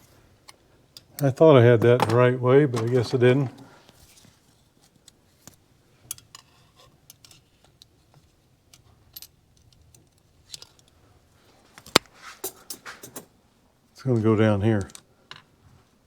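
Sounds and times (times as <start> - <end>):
metal tools clinking on workbench: 12.4 - 13.3.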